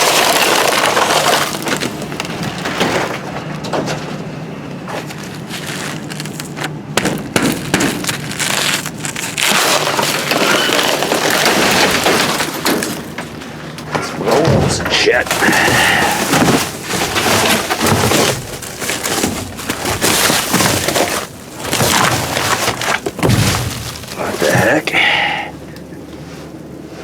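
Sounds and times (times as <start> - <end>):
ice cracking and crunching: 0.0 - 3.2, 4.9 - 25.5.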